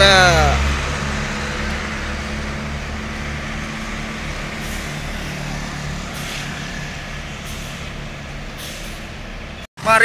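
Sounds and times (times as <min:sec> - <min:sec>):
diesel bus engine running: 0:00.0 - 0:10.0
air brake hisses: 0:06.2 - 0:06.5, 0:07.4 - 0:07.9, 0:08.6 - 0:09.1.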